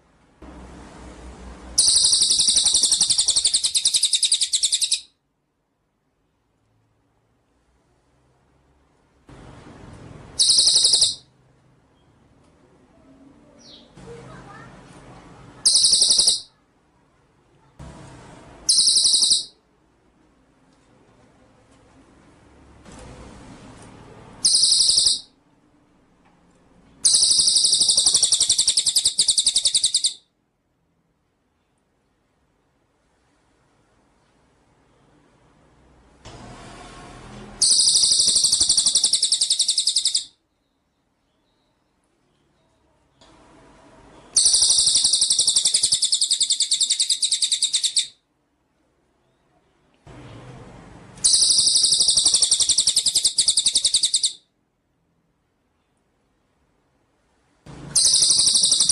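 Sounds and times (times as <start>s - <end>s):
bird high-pitched trill: 1.8s - 5.2s, 10.4s - 11.3s, 15.6s - 16.6s, 18.7s - 19.6s, 24.4s - 25.4s, 27.0s - 30.2s, 37.6s - 40.4s, 44.3s - 48.2s, 51.2s - 54.5s, 57.9s - 58.9s.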